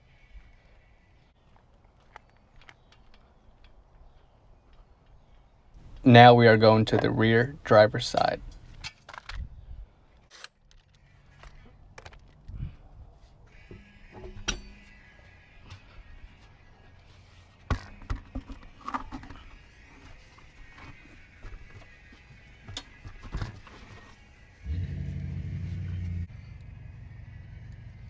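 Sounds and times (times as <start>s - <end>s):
steady low hum: 5.8s - 8.8s.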